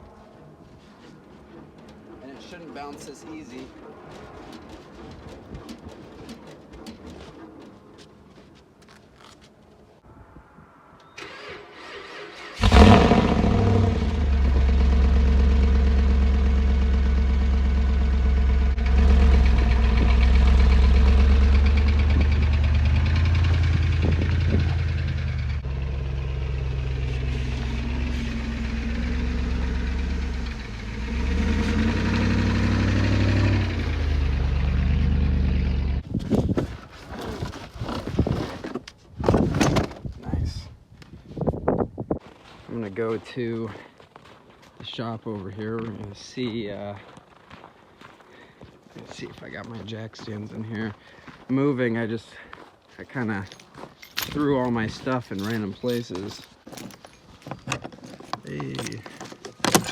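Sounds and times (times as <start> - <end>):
pickup truck engine starting and running: 11.2 - 36.0, 58.5 - 59.9.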